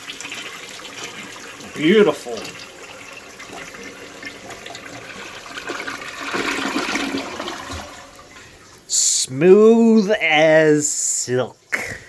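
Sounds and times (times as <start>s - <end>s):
toilet flushing: 0.0s - 9.3s.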